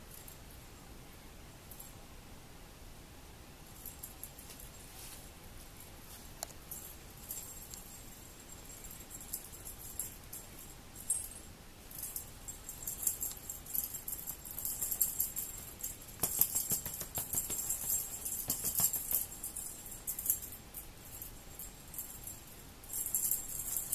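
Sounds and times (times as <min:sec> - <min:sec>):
small bells jingling: 0:06.7 - 0:23.9.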